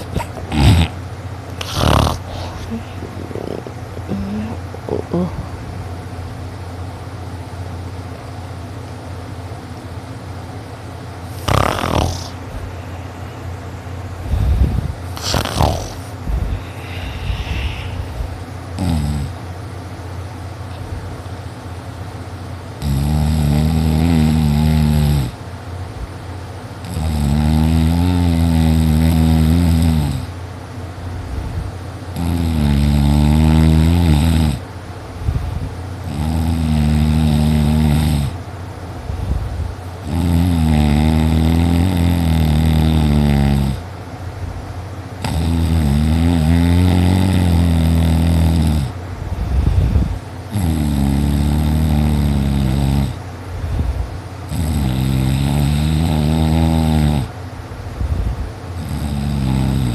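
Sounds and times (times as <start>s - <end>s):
person snoring loudly: 0.0s - 5.6s, 11.3s - 12.9s, 14.2s - 19.4s, 22.8s - 25.4s, 26.8s - 30.3s, 32.2s - 34.6s, 36.1s - 38.4s, 40.0s - 43.8s, 45.2s - 49.0s, 49.7s - 53.2s, 54.5s - 57.4s, 58.8s - 59.9s.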